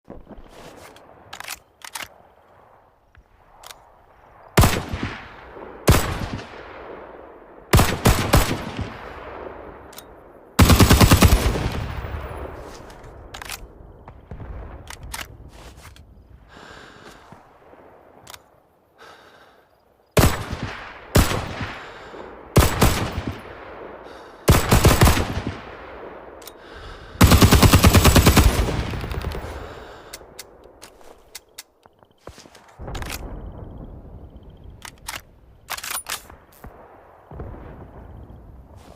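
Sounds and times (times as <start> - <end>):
automatic rifle bursts with echo: 10.6 - 11.6, 27.2 - 29.8.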